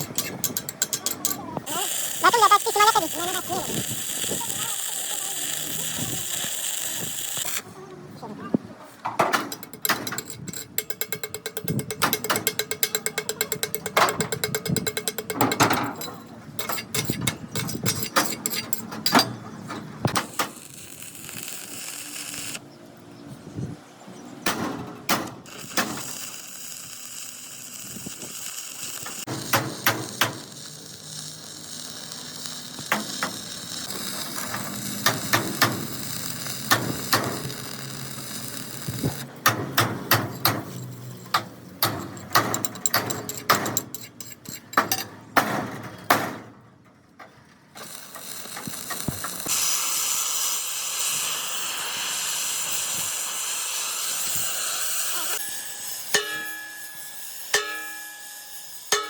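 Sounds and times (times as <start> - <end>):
tools clattering on metal: 0.0 - 1.6, 9.0 - 19.9, 39.4 - 46.6.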